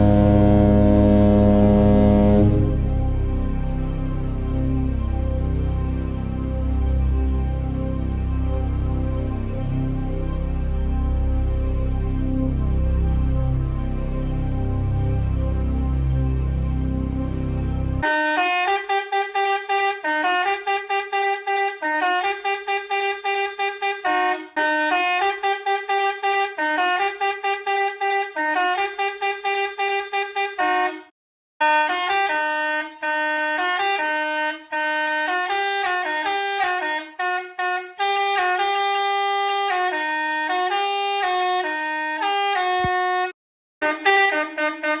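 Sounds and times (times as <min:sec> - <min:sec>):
air horn playing a tune: 0:00.0 - 0:03.6, 0:18.0 - 0:45.0.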